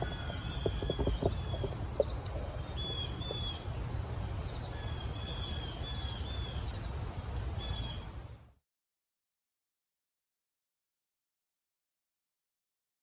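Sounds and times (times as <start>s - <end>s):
birds whistling and chipping: 0.0s - 3.6s.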